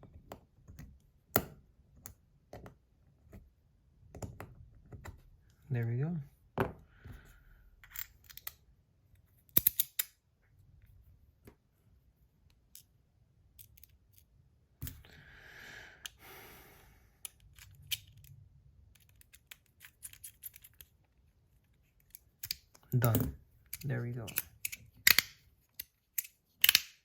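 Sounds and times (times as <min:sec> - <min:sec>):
small metal parts clicking: 0:07.8 - 0:08.6, 0:09.5 - 0:10.2, 0:13.5 - 0:15.0, 0:17.2 - 0:21.0, 0:21.9 - 0:27.0.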